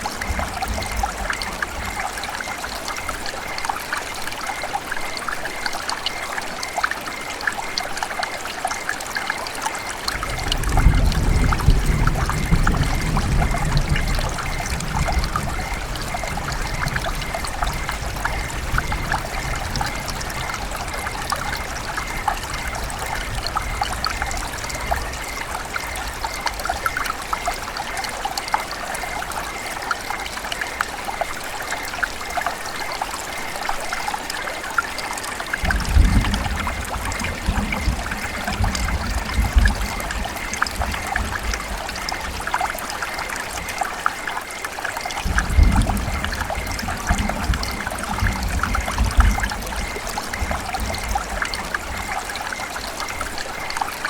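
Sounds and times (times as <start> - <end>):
river water babbling: 12.4 - 54.0.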